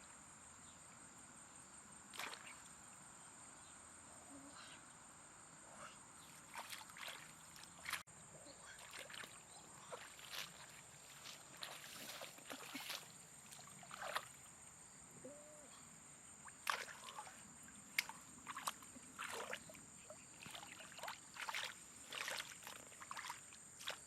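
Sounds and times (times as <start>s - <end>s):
shallow water sloshing and splashing: 6.3s - 8.0s, 8.8s - 14.5s, 16.5s - 19.8s, 20.4s - 24.0s.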